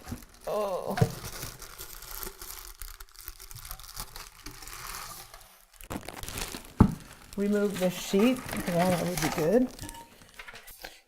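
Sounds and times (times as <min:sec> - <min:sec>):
packaging rustling and crinkling: 0:00.0 - 0:11.0
packaging tearing: 0:00.0 - 0:11.0.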